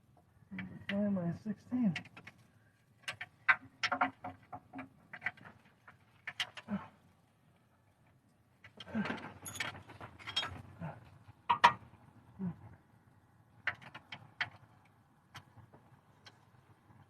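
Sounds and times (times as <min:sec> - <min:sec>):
metal tools clinking in toolbox: 0:09.1 - 0:10.7.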